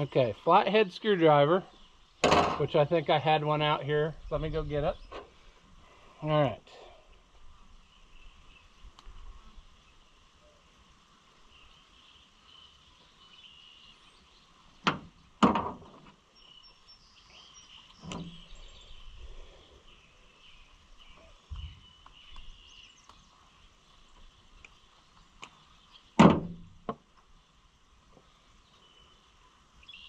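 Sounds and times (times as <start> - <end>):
birds or insects chirping: 0.0 - 30.0
sharp knocks: 2.2 - 2.7, 14.8 - 16.0, 26.2 - 27.0.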